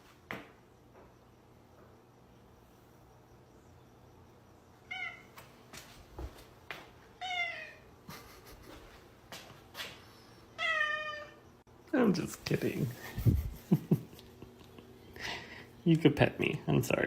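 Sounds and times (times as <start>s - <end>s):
cat meowing: 4.9s - 5.3s, 7.2s - 7.8s, 10.6s - 11.4s.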